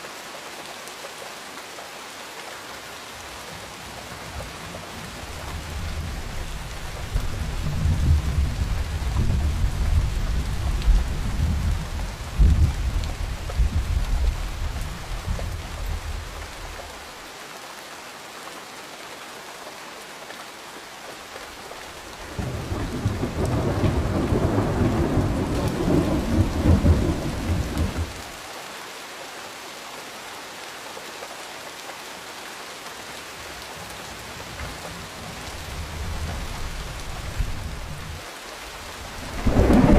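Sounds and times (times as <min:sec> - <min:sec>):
rain hissing: 0:21.2 - 0:28.4, 0:33.3 - 0:39.9
thunder rumbling: 0:22.3 - 0:28.2, 0:39.0 - 0:39.9.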